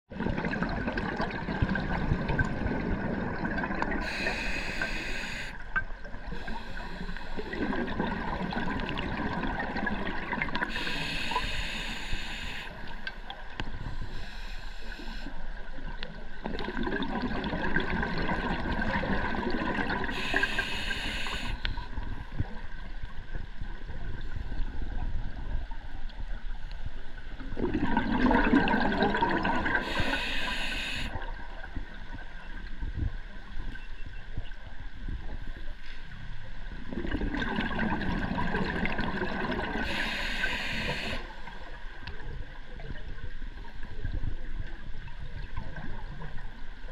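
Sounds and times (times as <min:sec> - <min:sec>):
water sloshing and gurgling: 0:00.1 - 0:46.9
short hissing bursts: 0:04.0 - 0:05.6, 0:10.7 - 0:12.8, 0:20.1 - 0:21.6, 0:29.8 - 0:31.1, 0:39.8 - 0:41.2.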